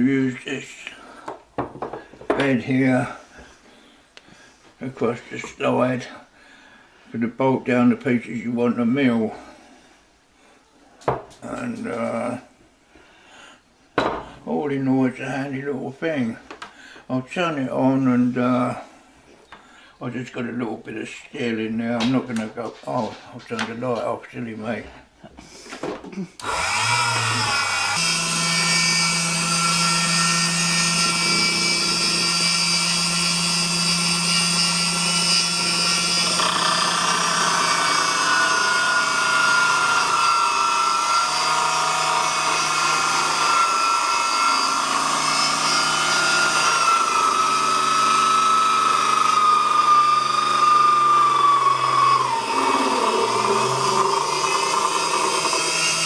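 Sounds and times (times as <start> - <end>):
lathe motor whining: 26.4 - 56.0.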